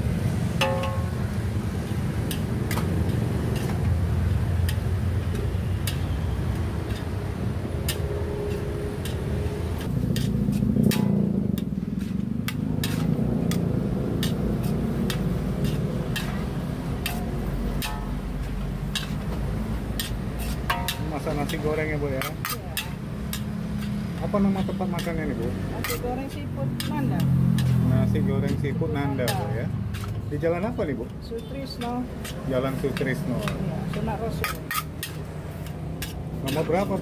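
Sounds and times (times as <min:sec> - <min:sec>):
metal spatula clanking on wok: 0:00.6 - 0:30.1, 0:31.0 - 0:37.0.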